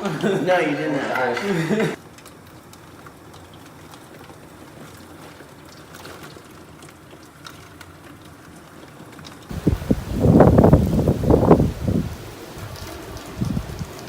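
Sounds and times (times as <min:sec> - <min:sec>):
heavy rain and wind rushing: 0:09.5 - 0:14.0
wind gusts buffeting microphone: 0:09.5 - 0:14.0.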